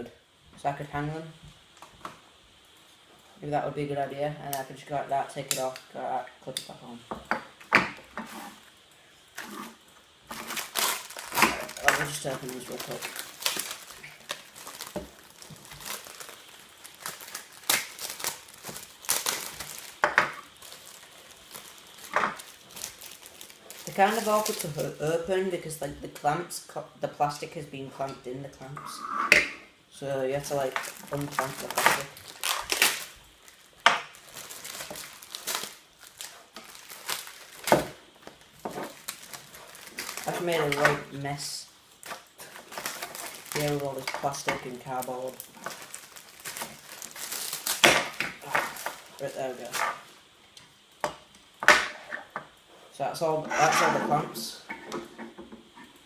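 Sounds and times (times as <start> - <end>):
plastic packaging crinkling and tearing: 9.4 - 26.3, 30.3 - 51.0.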